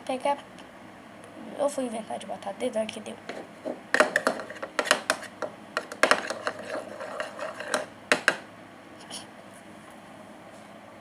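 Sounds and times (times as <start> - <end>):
sharp clicks and taps: 3.3 - 8.4
spoon stirring thick slime: 3.3 - 8.4.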